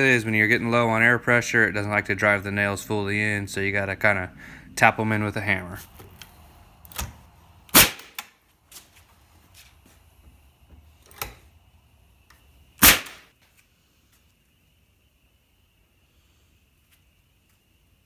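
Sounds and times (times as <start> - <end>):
nail gun bang: 7.7 - 8.3, 12.8 - 13.3.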